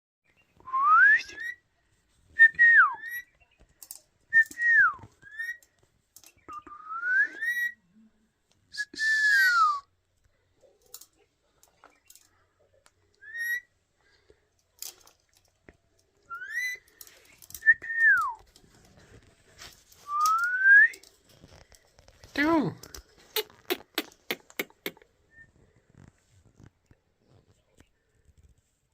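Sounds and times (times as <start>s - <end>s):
parakeets whistling: 7.4s - 7.8s, 13.3s - 13.7s, 16.3s - 16.8s
harsh scratchy bird call: 13.3s - 13.7s, 16.4s - 16.8s.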